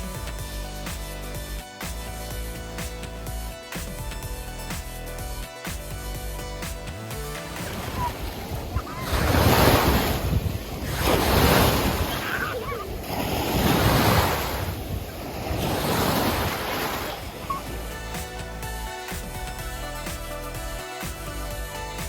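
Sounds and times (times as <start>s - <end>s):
small waves washing on shore: 5.8s - 22.0s.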